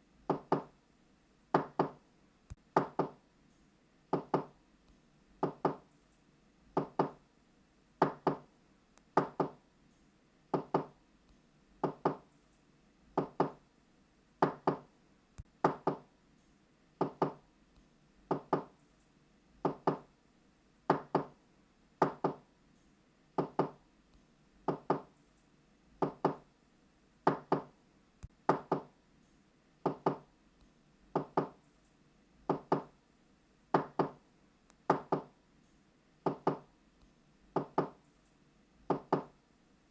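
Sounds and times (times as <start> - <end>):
knocking on a door: 0.3 - 0.7, 1.6 - 2.0, 2.8 - 3.2, 4.1 - 4.5, 5.4 - 5.8, 6.8 - 7.2, 8.0 - 8.5, 9.2 - 9.6, 10.5 - 11.0, 11.8 - 12.2, 13.2 - 13.6, 14.4 - 14.9, 15.6 - 16.1, 17.0 - 17.4, 18.3 - 18.7, 19.6 - 20.1, 20.9 - 21.3, 22.0 - 22.4, 23.4 - 23.8, 24.7 - 25.1, 26.0 - 26.4, 27.3 - 27.7, 28.5 - 28.9, 29.8 - 30.3, 31.2 - 31.6, 32.5 - 32.9, 33.7 - 34.2, 34.9 - 35.3, 36.2 - 36.7, 37.6 - 38.0, 38.9 - 39.3.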